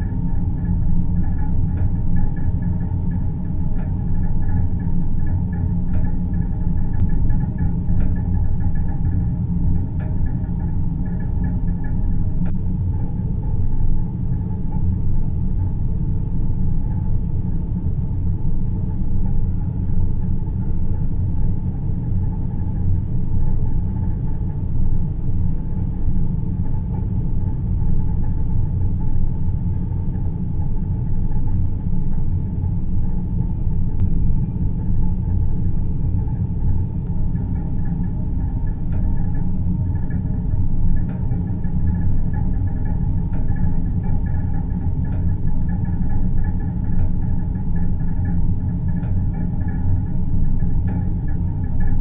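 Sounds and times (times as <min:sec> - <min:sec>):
faint hums: 0:00.0 - 0:52.0
low rumbling noise: 0:00.0 - 0:52.0.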